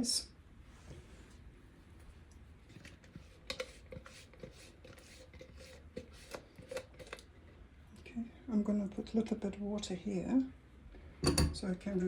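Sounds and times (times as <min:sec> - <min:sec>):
spoon scraping blender jar: 0:02.8 - 0:07.3.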